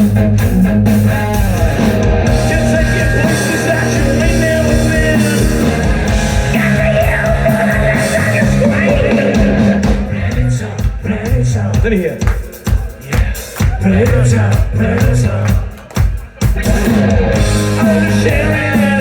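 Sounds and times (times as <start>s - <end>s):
distorted electric guitar: 0.0s - 11.6s, 13.7s - 19.0s
bass guitar: 0.0s - 19.0s
drums: 0.0s - 19.0s.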